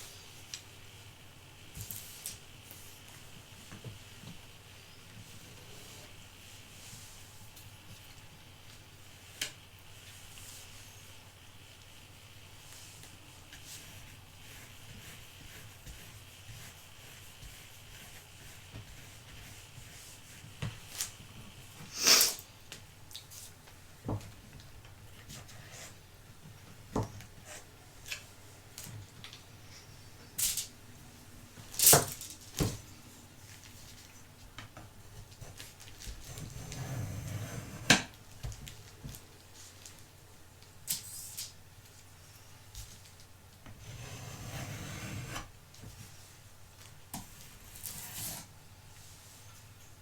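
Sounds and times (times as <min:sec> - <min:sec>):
soft rustle: 0:48.9 - 0:49.8.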